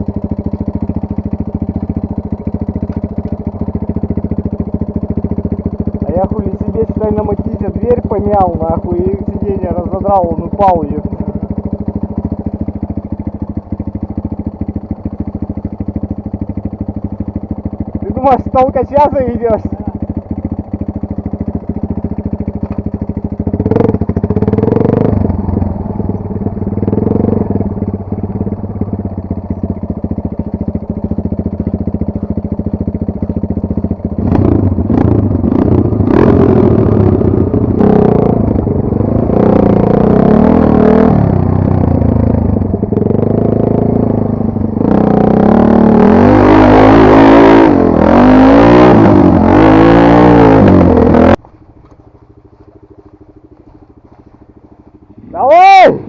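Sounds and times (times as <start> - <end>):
dirt bike engine revving: 0.0 - 56.0.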